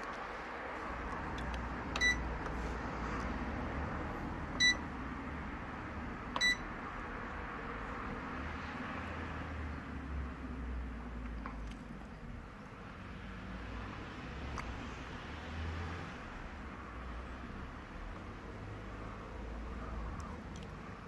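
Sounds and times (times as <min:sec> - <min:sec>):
high electronic beeps: 0:04.6 - 0:04.8.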